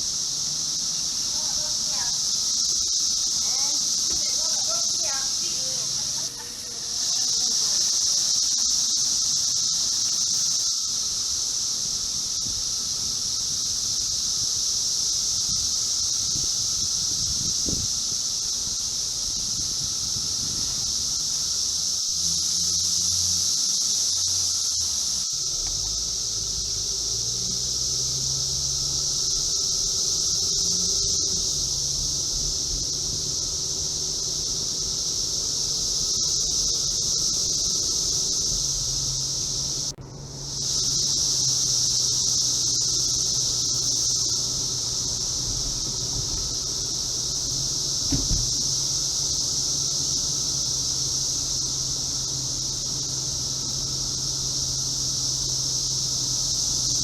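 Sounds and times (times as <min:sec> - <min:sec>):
cicadas droning: 0:00.0 - 0:57.0.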